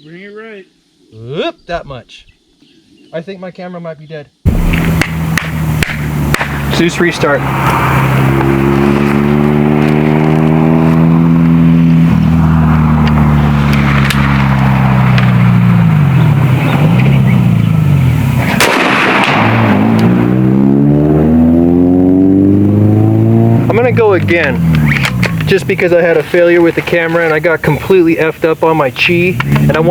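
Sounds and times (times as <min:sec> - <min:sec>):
sharp crack: 0:04.5 - 0:11.0, 0:12.0 - 0:20.6, 0:23.7 - 0:28.3, 0:29.1 - 0:29.9
motor engine running loudly: 0:04.5 - 0:18.4.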